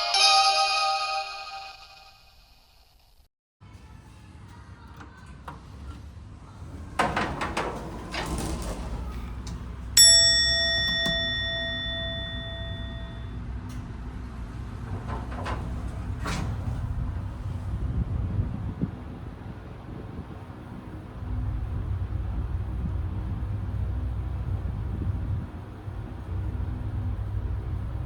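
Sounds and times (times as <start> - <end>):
elevator chime: 0.0 - 2.6, 10.0 - 13.7
elevator car hum: 5.7 - 28.0
elevator rattles: 6.6 - 13.2, 13.8 - 28.0
elevator doors clattering: 6.6 - 28.0.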